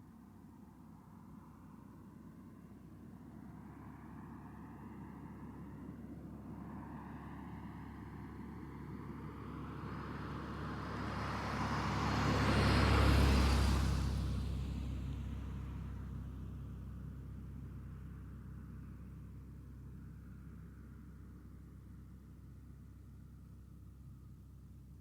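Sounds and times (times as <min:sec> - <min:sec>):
car driving past: 0:06.7 - 0:16.0.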